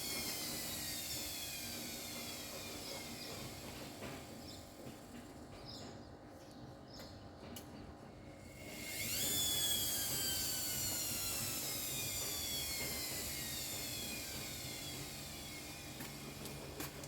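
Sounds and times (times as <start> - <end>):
washing machine motor whining: 0.0 - 5.1, 8.4 - 17.0.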